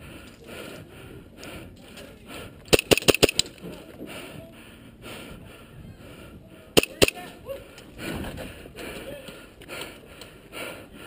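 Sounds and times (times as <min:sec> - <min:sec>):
airsoft gun shots: 0:02.7 - 0:03.5, 0:06.8 - 0:07.2.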